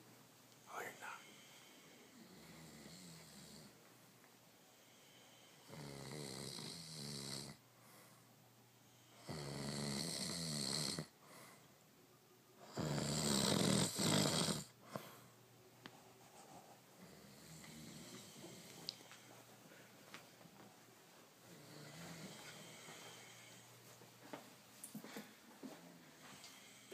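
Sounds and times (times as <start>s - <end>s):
quiet breathing: 0.0s - 10.3s, 11.0s - 26.9s
person snoring loudly: 5.6s - 7.6s, 9.2s - 11.1s, 12.6s - 14.7s.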